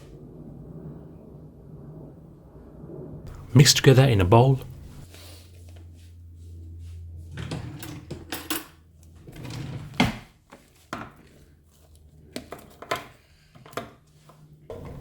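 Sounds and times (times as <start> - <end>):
low hum: 0.0 - 8.2.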